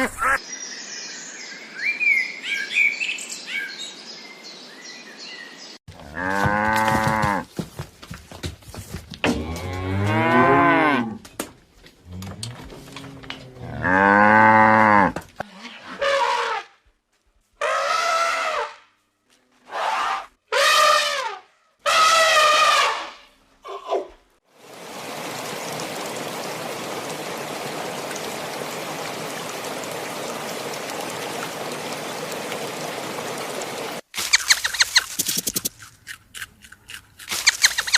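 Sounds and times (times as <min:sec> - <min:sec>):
cattle mooing: 0:06.0 - 0:07.4, 0:12.2 - 0:15.2.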